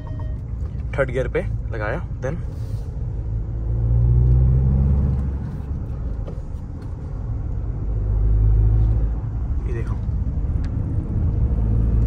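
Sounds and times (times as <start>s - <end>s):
diesel engine accelerating: 3.0s - 6.2s, 7.1s - 12.0s.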